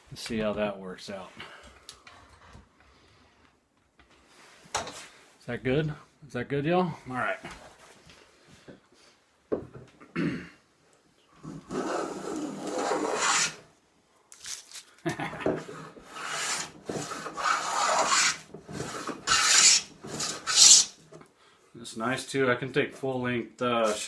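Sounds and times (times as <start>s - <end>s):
hand plane cutting wood: 11.4s - 13.6s, 15.8s - 21.0s.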